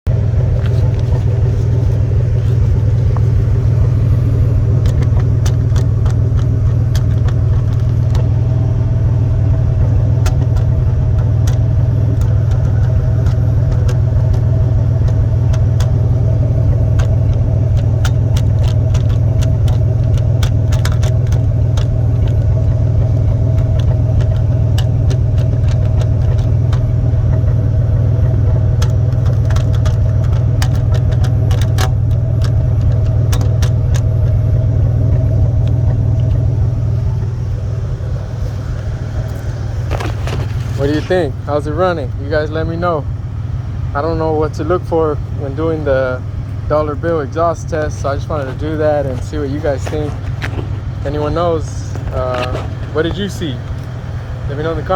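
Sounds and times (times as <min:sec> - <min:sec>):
engine exhaust idling rumble: 0:00.0 - 0:54.9
light ticks and clicks: 0:10.1 - 0:36.6.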